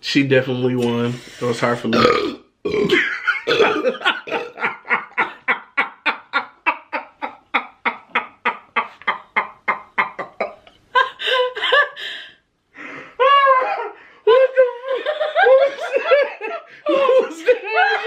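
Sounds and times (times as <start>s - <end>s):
person laughing: 2.8s - 12.1s, 13.2s - 18.0s
high-pitched laughing: 13.2s - 18.0s.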